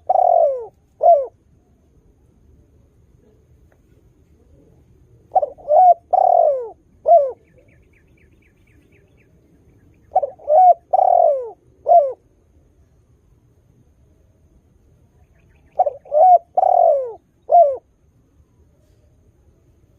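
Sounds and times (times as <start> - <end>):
dove cooing: 0.0 - 1.4, 4.5 - 7.8, 10.1 - 12.2, 15.6 - 18.0.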